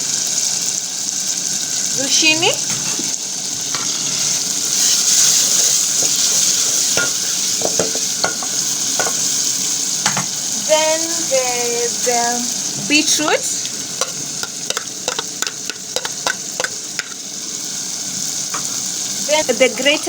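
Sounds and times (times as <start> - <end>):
sauce sizzling in hot oil: 0.0 - 20.0
spoon scraping pan: 2.0 - 11.2, 12.7 - 17.3.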